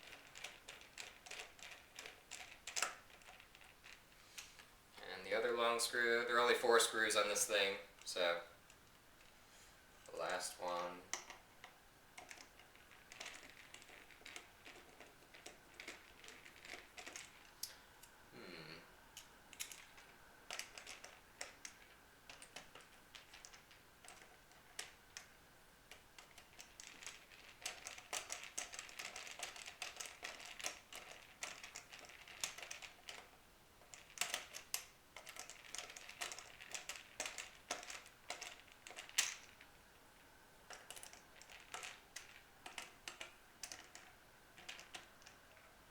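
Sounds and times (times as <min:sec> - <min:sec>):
metal screws clicking and scraping: 0:00.0 - 0:04.7, 0:10.6 - 0:17.7, 0:19.2 - 0:25.3, 0:25.9 - 0:39.6, 0:40.7 - 0:45.7.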